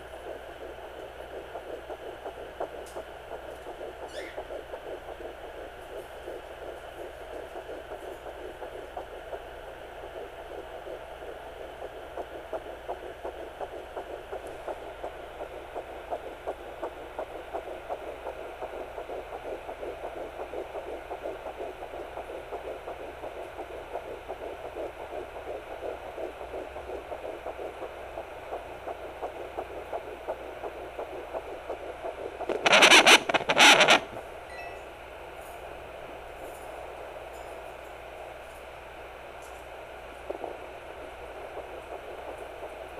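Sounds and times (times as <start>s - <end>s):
fetal heartbeat whooshing pulses: 0.0s - 34.2s, 39.2s - 42.9s
steady hum: 0.0s - 42.9s
loud burst of noise: 32.5s - 34.2s.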